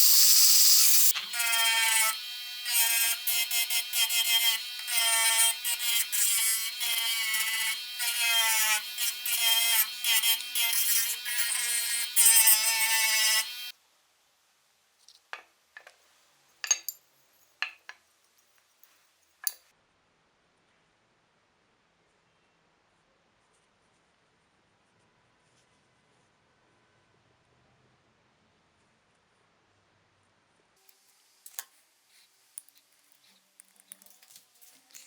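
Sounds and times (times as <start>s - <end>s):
hiss in bursts: 0.0s - 1.1s
power tool whining: 0.0s - 13.7s.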